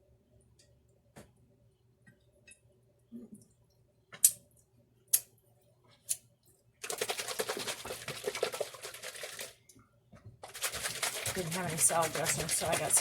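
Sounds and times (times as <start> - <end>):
rapid clatter of mixing: 6.8 - 9.6, 10.4 - 13.0.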